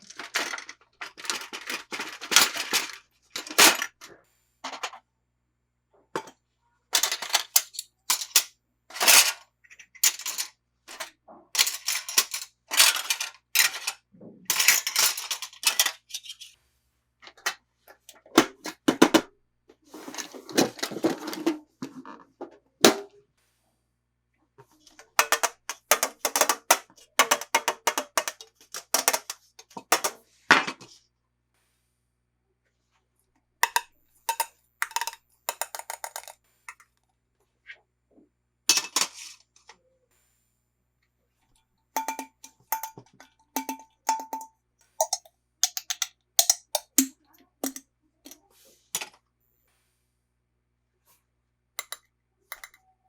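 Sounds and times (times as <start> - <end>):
plastic toy pieces clicking: 0.0 - 3.9, 7.0 - 16.1, 25.2 - 30.2, 33.6 - 36.8, 42.0 - 43.0, 45.0 - 47.8, 51.8 - 52.8.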